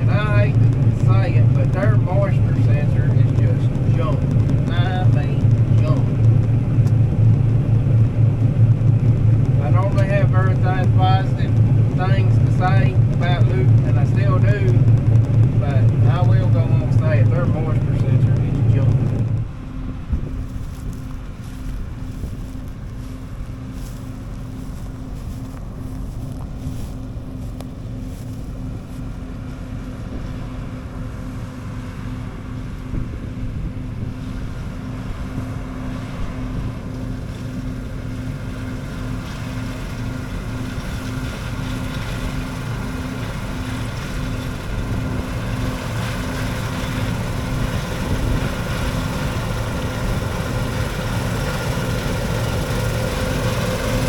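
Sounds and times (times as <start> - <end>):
combine harvester running: 0.0 - 54.0
wind noise: 0.0 - 54.0.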